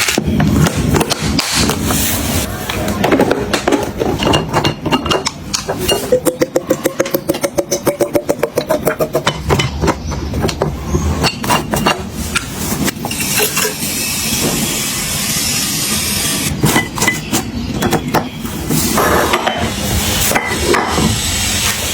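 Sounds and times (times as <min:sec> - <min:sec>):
glass and containers clinking: 0:03.0 - 0:14.7, 0:16.6 - 0:21.1.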